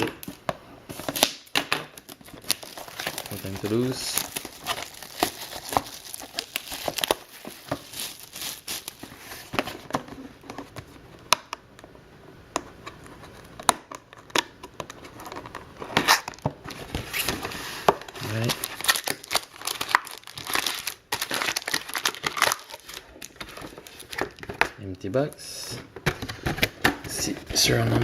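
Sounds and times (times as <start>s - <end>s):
wrapping torn and crinkled: 0.0s - 9.5s, 15.1s - 24.6s.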